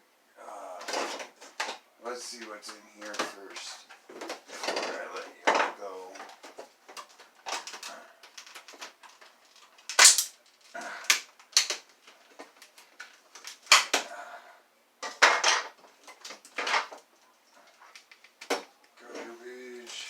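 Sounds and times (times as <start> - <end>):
sharp plastic snaps: 6.2 - 14.1, 17.8 - 19.0.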